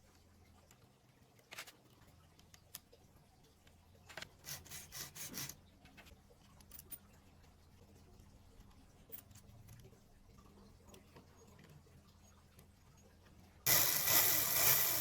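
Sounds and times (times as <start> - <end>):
faint scraping on metal: 4.2 - 5.6.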